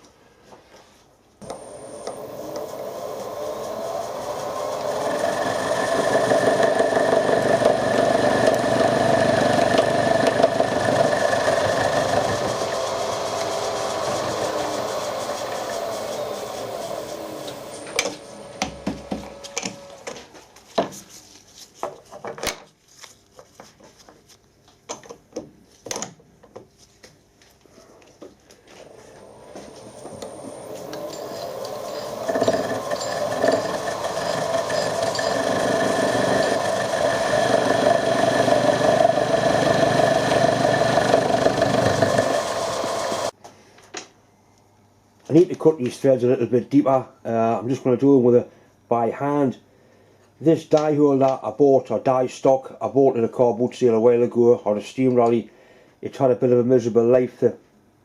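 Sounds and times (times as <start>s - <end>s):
machine tool motor whining: 1.4s - 20.3s, 28.8s - 43.3s.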